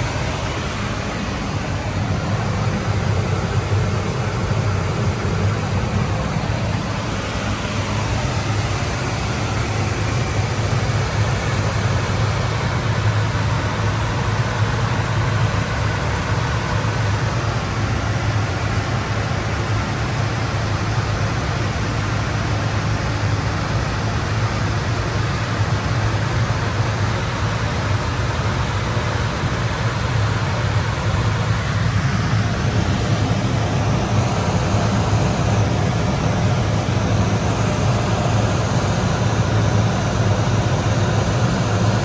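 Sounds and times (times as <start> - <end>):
constant hiss: 0.0 - 42.0.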